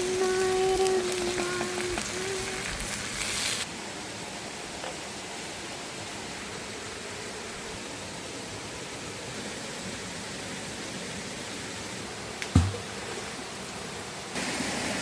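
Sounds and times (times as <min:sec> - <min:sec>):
flowing river water: 0:00.0 - 0:15.0
dull thump: 0:12.4 - 0:12.9.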